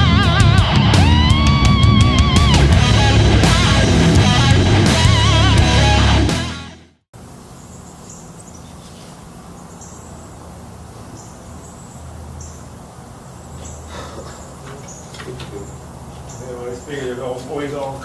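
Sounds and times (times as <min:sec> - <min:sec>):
heavy guitar music: 0:00.0 - 0:07.0.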